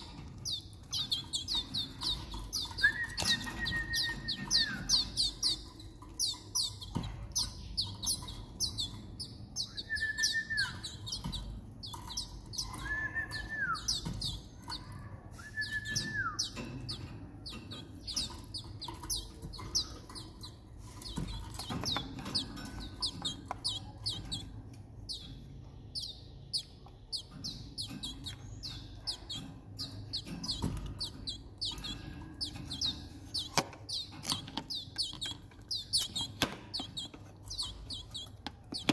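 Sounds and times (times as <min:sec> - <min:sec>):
canary chicks cheeping: 0:00.0 - 0:38.9.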